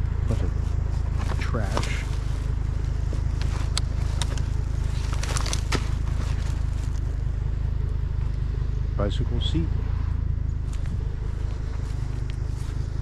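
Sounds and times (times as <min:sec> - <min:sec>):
steady low rumble: 0:00.0 - 0:13.0
debris clicking and rustling: 0:01.1 - 0:07.2.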